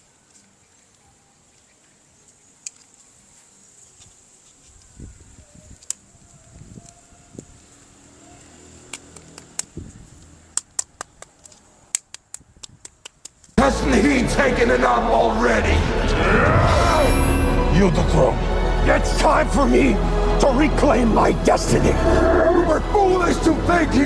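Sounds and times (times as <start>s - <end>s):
sharp plastic clicks: 8.9s - 13.6s.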